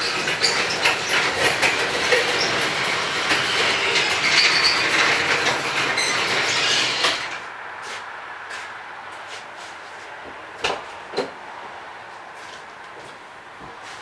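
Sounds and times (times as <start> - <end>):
loud rasping car engine: 0.0 - 7.5.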